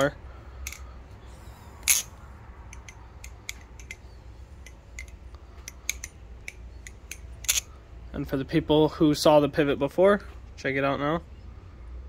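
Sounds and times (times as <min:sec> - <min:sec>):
balisong handles clicking: 0:00.6 - 0:00.9, 0:01.8 - 0:07.7.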